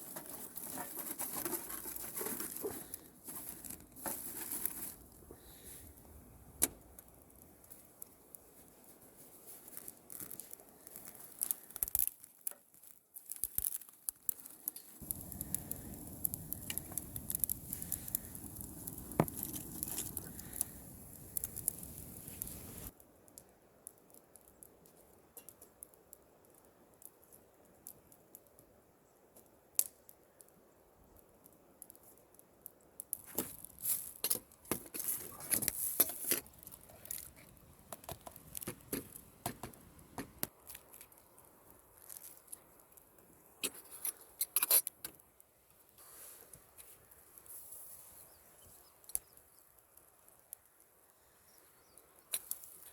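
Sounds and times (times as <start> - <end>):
rustling and crinkling: 0.0 - 23.0, 31.4 - 50.9
small clicks and knocks: 9.7 - 28.7, 31.2 - 45.3.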